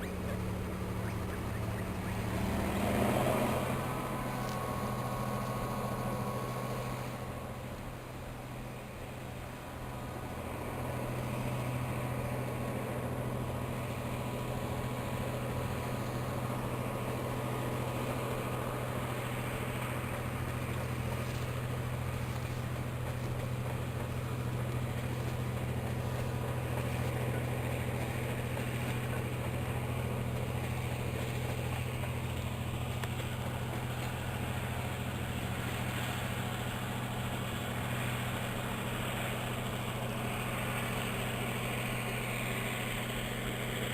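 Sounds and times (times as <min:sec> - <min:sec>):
low machine hum: 0:00.0 - 0:43.9.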